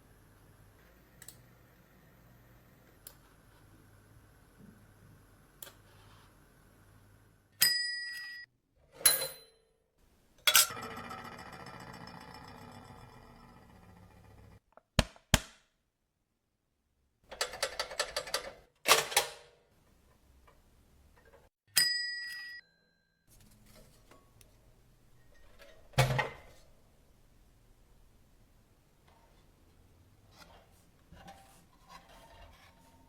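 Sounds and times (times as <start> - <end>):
bell ding: 21.8 - 23.2.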